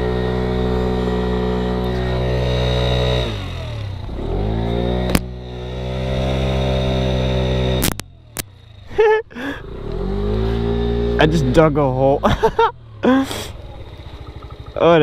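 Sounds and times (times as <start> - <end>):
scooter engine revving: 0.0 - 15.0
wheel spinning on loose ground: 10.0 - 15.0.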